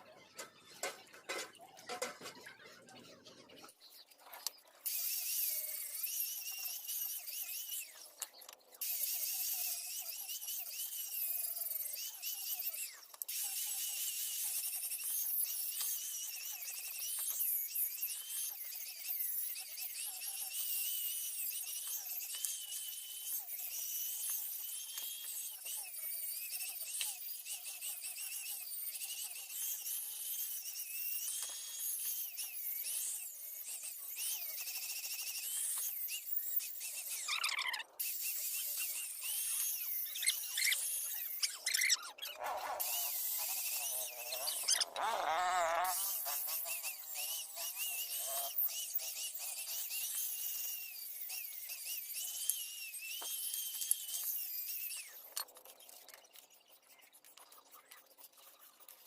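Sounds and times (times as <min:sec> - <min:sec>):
power tool whine: 0:00.0 - 0:59.0.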